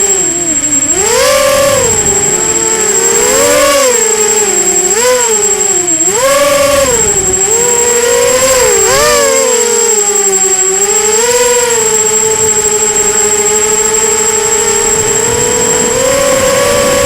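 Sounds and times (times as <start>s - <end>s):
quadcopter motors whining: 0.0s - 17.0s
steady high-pitched whine: 0.0s - 17.0s.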